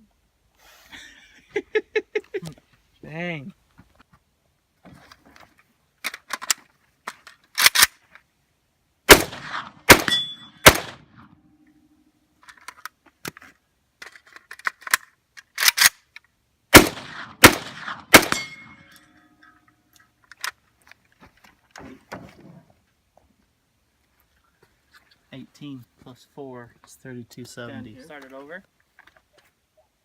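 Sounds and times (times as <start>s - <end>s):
magazine change clacks: 6.0s - 8.0s, 14.0s - 16.2s, 16.8s - 19.1s
rifle loading clicks: 6.0s - 8.0s, 14.0s - 16.3s, 20.0s - 20.6s
rifle shots: 9.1s - 11.3s, 16.7s - 18.9s
metallic ringing: 10.0s - 10.6s, 18.3s - 19.7s.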